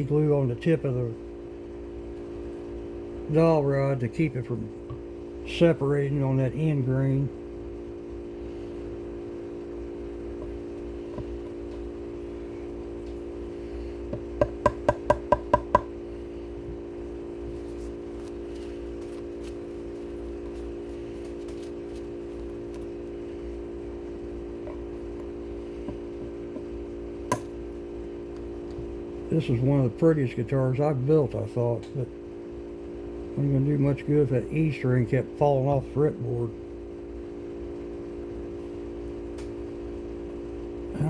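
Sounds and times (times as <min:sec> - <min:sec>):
steady hum: 0:00.0 - 0:41.0
sharp woody taps: 0:14.1 - 0:15.9.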